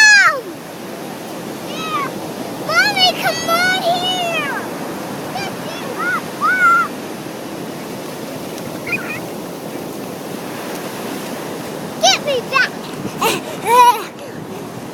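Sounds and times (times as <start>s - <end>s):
surf washing on beach: 0.0s - 14.9s
short high-pitched calls: 8.8s - 9.2s.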